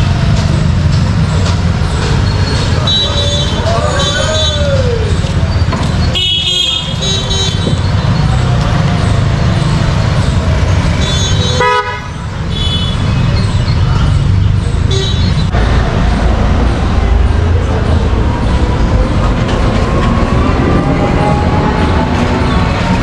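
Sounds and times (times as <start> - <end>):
rumble of engines: 0.0 - 23.0
vehicle horn honks: 6.2 - 7.8, 11.0 - 13.2.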